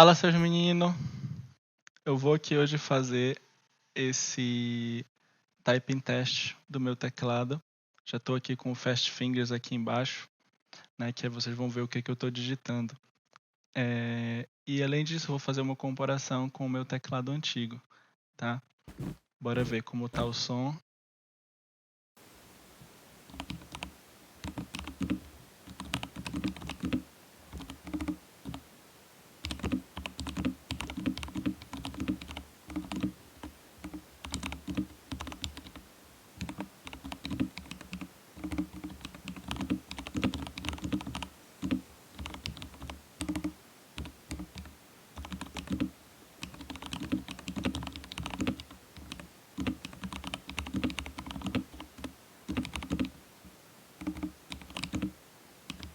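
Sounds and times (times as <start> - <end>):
mechanical keyboard typing: 23.2 - 28.6, 29.4 - 53.2, 54.0 - 55.9.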